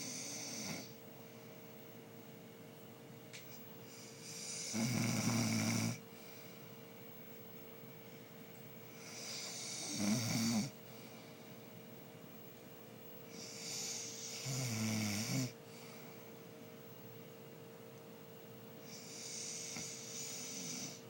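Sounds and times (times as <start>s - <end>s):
man snoring: 0.0s - 1.0s, 4.2s - 6.0s, 9.0s - 10.8s, 13.3s - 15.6s, 18.9s - 21.0s.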